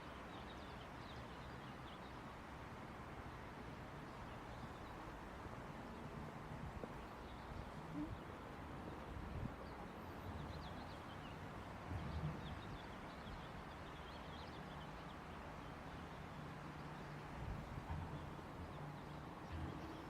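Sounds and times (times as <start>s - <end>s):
low rumble of traffic: 0.0s - 20.0s.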